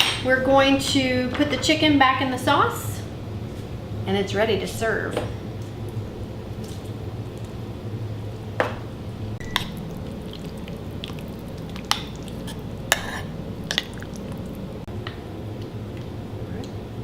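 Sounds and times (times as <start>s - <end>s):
wet squishing of stirred food: 9.5s - 14.9s.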